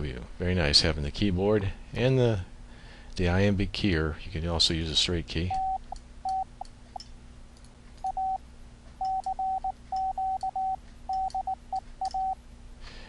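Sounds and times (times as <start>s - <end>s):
morse code beeps: 5.5s - 6.5s, 8.0s - 8.4s, 9.0s - 12.4s.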